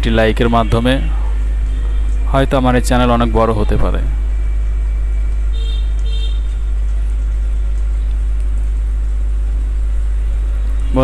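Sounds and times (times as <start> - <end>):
rainfall: 5.2 - 11.0.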